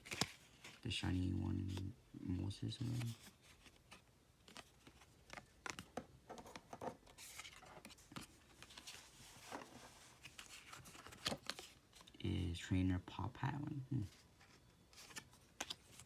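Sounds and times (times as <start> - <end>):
cards scraping and ticking: 0.0 - 0.8, 2.8 - 12.2, 14.3 - 16.0.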